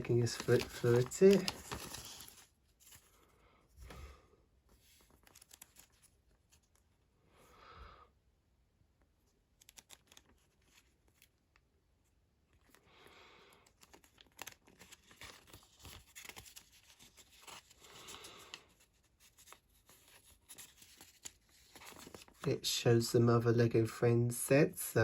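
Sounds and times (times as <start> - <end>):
small paper clicks: 0.0 - 3.0, 4.9 - 6.8, 9.3 - 11.7, 13.5 - 22.4
paper pages turning: 0.0 - 3.2, 4.7 - 6.8, 9.6 - 11.6, 13.6 - 22.6.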